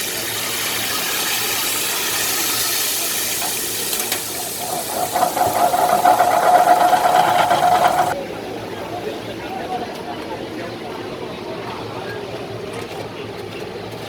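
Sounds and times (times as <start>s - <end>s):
oil sizzling: 0.4s - 8.2s.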